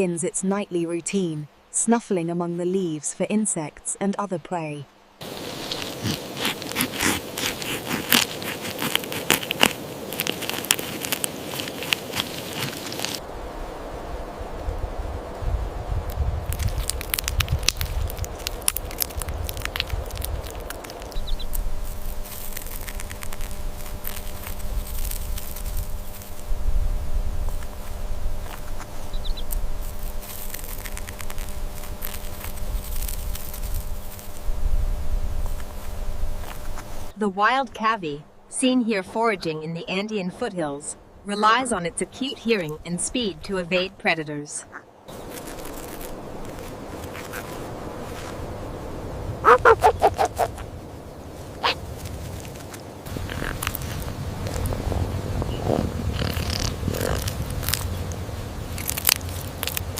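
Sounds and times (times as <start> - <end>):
low rumble and hum: 5.0 - 44.0
crackling and rustling clicks: 5.2 - 13.2, 16.1 - 26.4, 27.5 - 34.4, 45.1 - 48.4, 51.6 - 54.8, 56.2 - 59.9
hedgehog crunching dry leaves: 5.2 - 13.2, 16.0 - 37.0, 45.1 - 48.6, 49.4 - 59.9.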